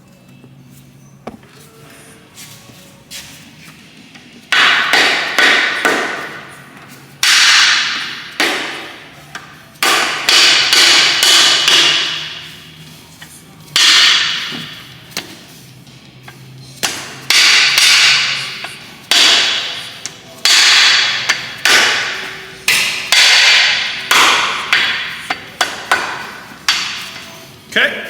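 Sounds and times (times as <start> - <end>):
hammer striking metal: 4.4 - 12.7, 13.8 - 15.4, 16.3 - 27.4.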